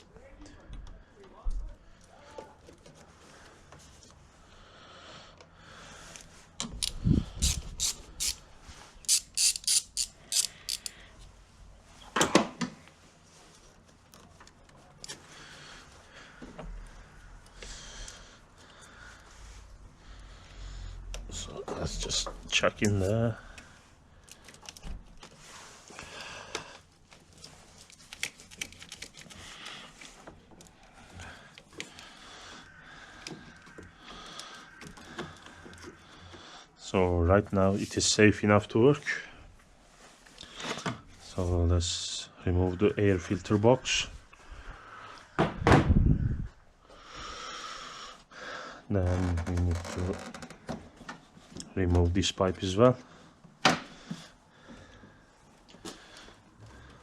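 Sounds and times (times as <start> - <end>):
ratchet wrench clicking: 6.8 - 8.4, 9.0 - 11.0.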